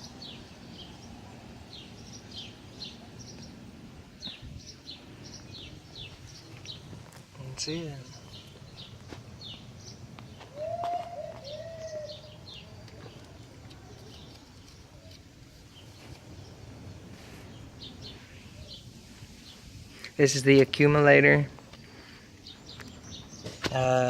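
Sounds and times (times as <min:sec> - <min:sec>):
low arched bird calls: 0:00.0 - 0:16.7
small birds chirping: 0:00.0 - 0:24.0.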